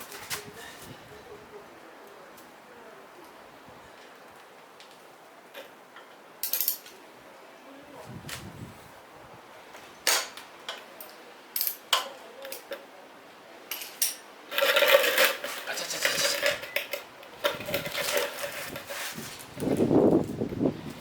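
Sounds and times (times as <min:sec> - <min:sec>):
metal tools clinking: 0:05.6 - 0:07.0, 0:10.1 - 0:12.8, 0:13.7 - 0:19.9
metal rattling and scraping: 0:13.8 - 0:21.0.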